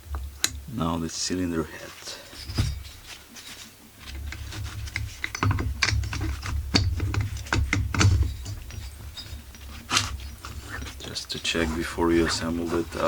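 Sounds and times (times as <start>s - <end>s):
dull handling bumps: 1.8s - 13.0s
chainsaw parts clicking and knocking: 4.0s - 11.4s.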